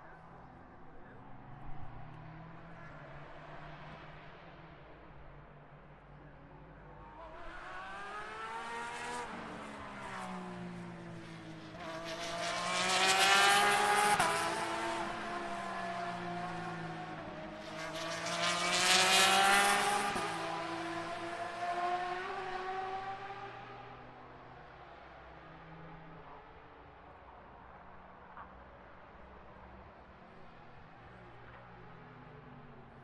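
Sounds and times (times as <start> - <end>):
race cars accelerating past: 6.0 - 27.2.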